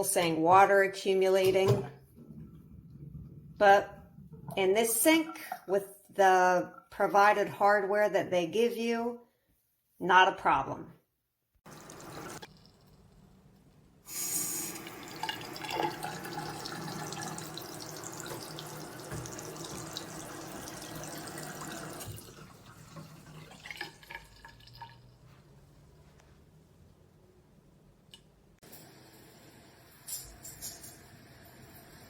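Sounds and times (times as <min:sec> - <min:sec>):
faucet running into a sink: 0:11.7 - 0:12.8, 0:14.1 - 0:25.1
water draining from a basin: 0:11.7 - 0:13.1, 0:14.5 - 0:25.2
water dripping: 0:11.7 - 0:13.1, 0:14.7 - 0:25.2.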